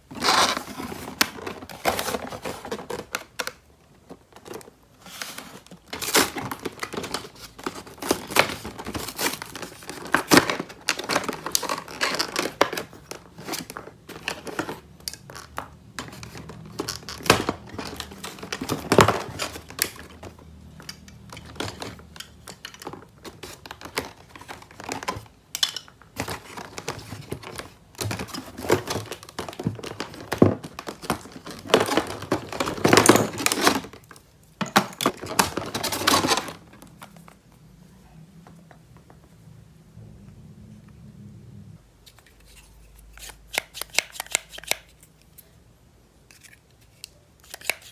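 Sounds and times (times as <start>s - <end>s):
toy packaging crinkling: 4.4s - 20.4s, 21.0s - 37.3s, 46.3s - 47.9s.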